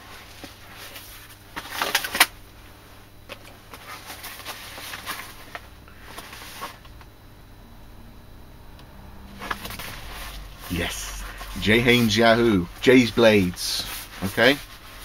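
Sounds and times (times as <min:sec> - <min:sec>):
packaging rustling and crinkling: 0:00.1 - 0:02.3, 0:03.3 - 0:07.0.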